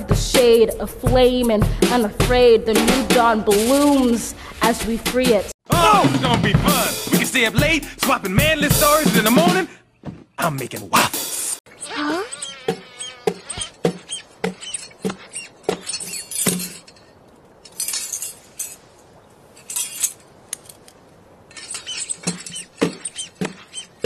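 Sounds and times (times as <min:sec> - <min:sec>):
metallic jingling: 0:12.3 - 0:24.0.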